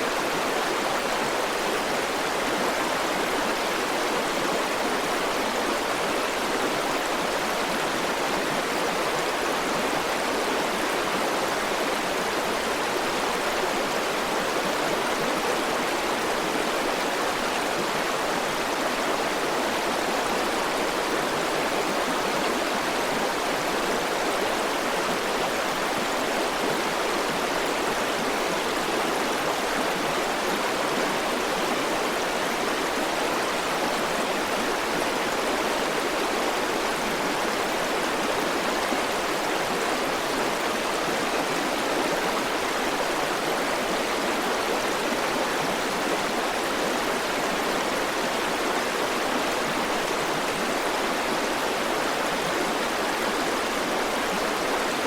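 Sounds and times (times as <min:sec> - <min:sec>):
river water rushing over rocks: 0:00.0 - 0:55.0.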